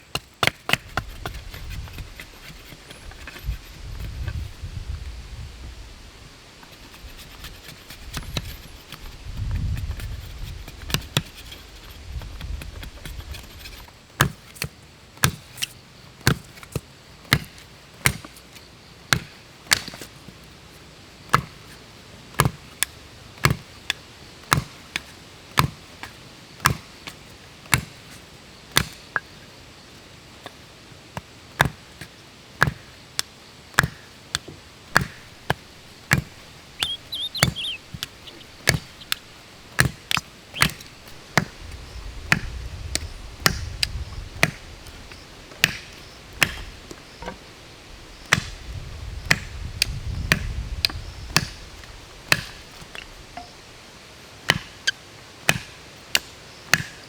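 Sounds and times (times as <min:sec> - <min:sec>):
wood being chopped: 0:00.0 - 0:04.4, 0:07.1 - 0:18.4, 0:19.1 - 0:20.1, 0:21.3 - 0:21.6, 0:22.3 - 0:26.9, 0:27.7 - 0:28.0, 0:28.8 - 0:29.3, 0:31.2 - 0:41.6, 0:42.2 - 0:47.5, 0:48.2 - 0:48.6, 0:49.2 - 0:53.5, 0:54.5 - 0:54.8, 0:55.5 - 0:57.0.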